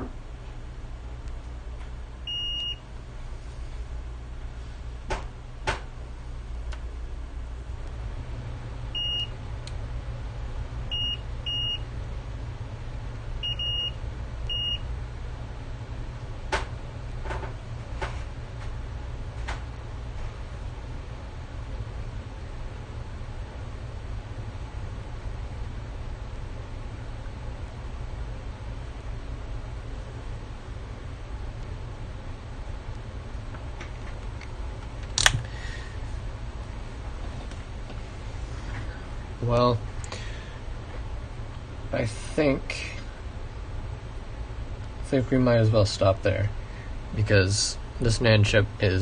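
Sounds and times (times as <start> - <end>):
multimeter beeps: 2.3 - 2.8, 9.0 - 9.3, 10.9 - 11.8, 13.4 - 14.8.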